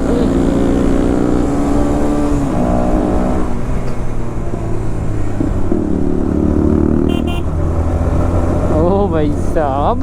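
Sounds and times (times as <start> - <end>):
motorcycle engine running: 5.8 - 9.4
higher engine tone: 7.0 - 7.9.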